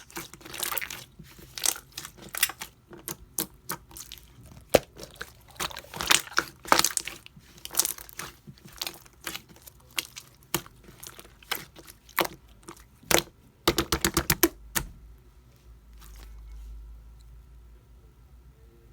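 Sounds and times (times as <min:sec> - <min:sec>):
slime squished by hand: 0:00.0 - 0:15.0.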